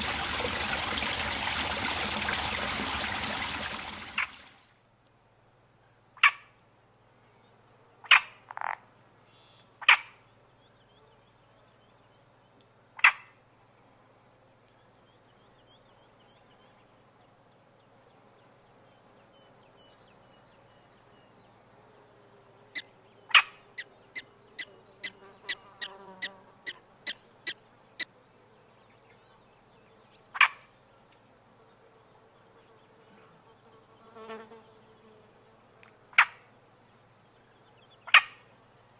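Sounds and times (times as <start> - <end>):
frogs calling: 22.8 - 27.6.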